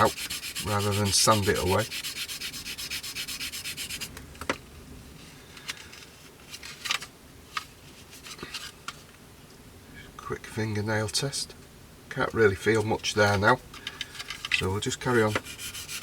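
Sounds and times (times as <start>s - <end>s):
sanding sponge on plastic: 0.0s - 4.1s, 14.8s - 16.0s.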